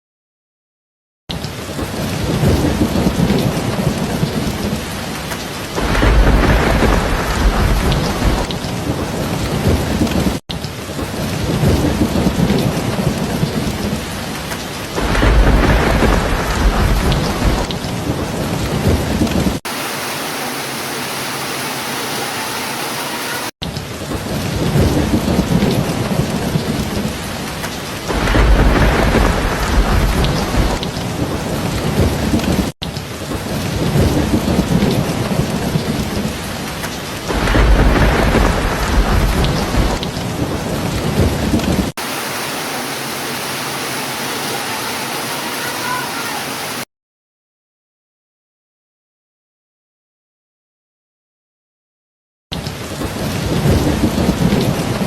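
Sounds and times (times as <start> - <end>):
heavy rain: 1.3 - 46.9, 52.5 - 55.0
thunder rumbling: 1.6 - 20.0, 23.9 - 45.3, 52.8 - 55.0.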